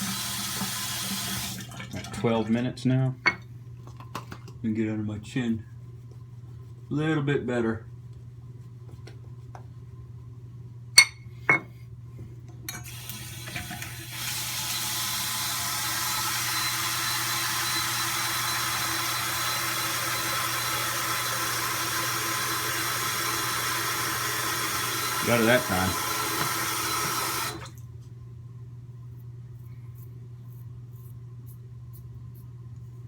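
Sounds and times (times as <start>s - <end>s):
tap water pouring: 0.0s - 2.4s, 12.8s - 27.8s.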